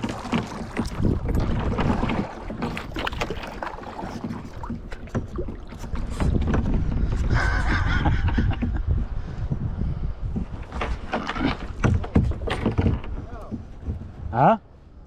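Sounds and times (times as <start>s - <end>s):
paddle splashing in water: 0.0s - 7.6s, 10.4s - 14.3s
wind buffeting microphone: 0.0s - 15.0s.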